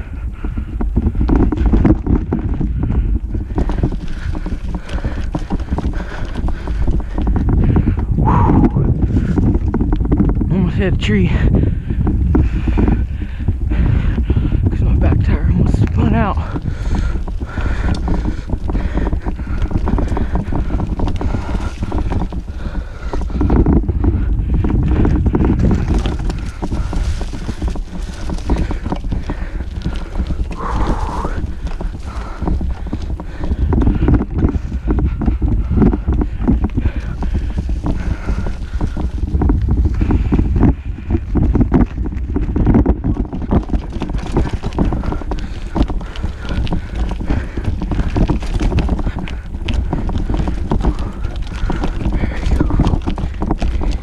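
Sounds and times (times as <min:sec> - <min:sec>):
bike rattling and knocking: 0:00.0 - 0:54.0
low rumble: 0:00.0 - 0:54.0
wind on microphone: 0:00.0 - 0:54.0.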